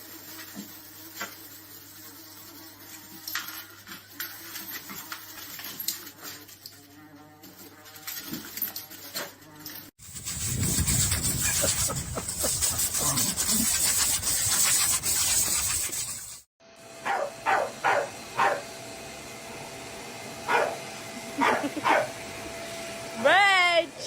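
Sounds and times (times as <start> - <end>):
dog barking: 17.0 - 18.7, 20.5 - 20.8, 21.4 - 22.1.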